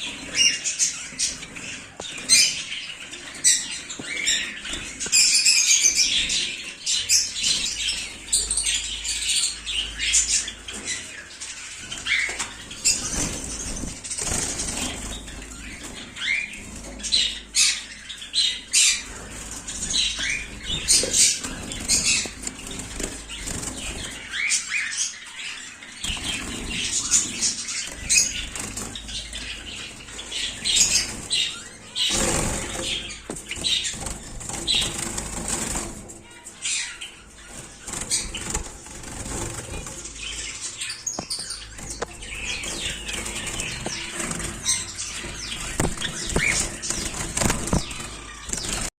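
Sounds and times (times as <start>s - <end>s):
parrots chirping and squawking: 0.0s - 48.9s
wings flapping: 12.3s - 17.2s, 18.9s - 24.4s, 26.0s - 36.8s, 37.4s - 48.9s.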